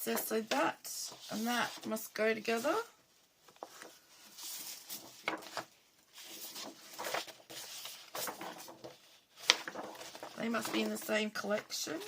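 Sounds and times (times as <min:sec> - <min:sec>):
paper rustling and sliding: 0:03.4 - 0:11.1.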